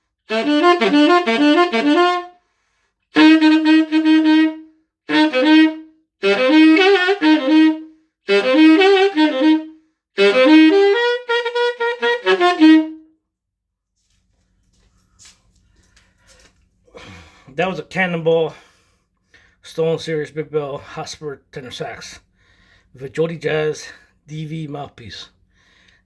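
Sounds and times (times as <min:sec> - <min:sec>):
tenor saxophone melody: 0:00.2 - 0:02.5, 0:03.1 - 0:13.2.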